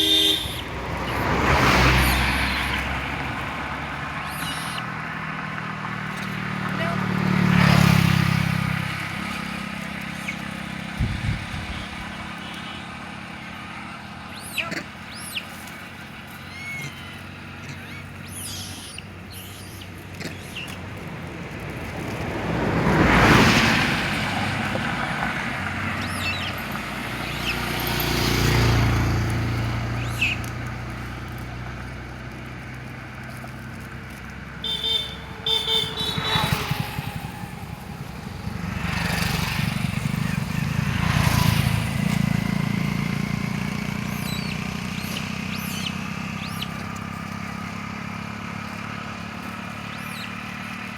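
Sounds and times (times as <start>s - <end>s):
short horn toots: 0.0s - 0.7s, 34.6s - 37.6s
road vehicles passing: 0.0s - 50.9s.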